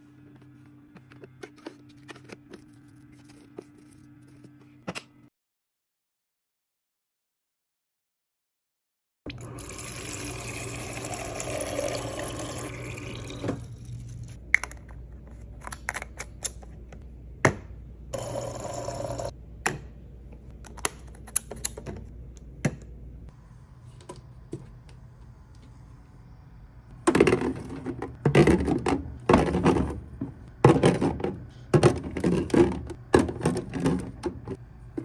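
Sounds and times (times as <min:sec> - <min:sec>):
liquid pouring: 0:09.3 - 0:14.4.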